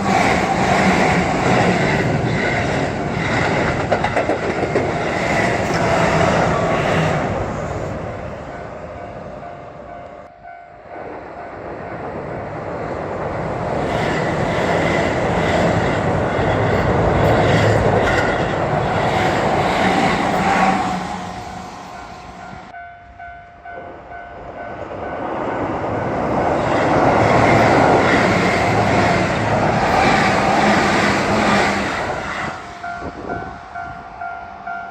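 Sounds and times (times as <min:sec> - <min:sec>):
train wheels clattering on rails: 0:00.0 - 0:07.3, 0:13.8 - 0:22.8.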